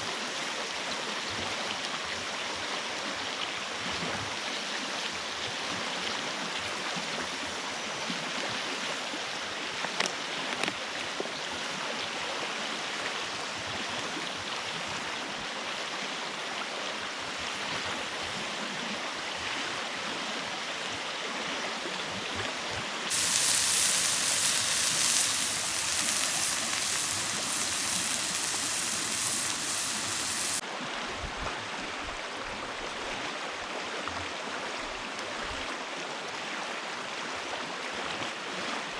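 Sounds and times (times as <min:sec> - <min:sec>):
stream rushing: 0:23.1 - 0:30.6.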